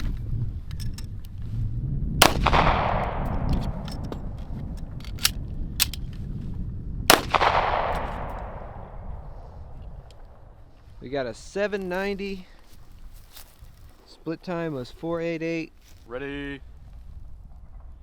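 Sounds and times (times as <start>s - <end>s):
pistol shots with echo: 2.2s - 3.8s, 7.1s - 9.2s
magazine reload clicks: 2.2s - 4.2s, 4.8s - 6.0s.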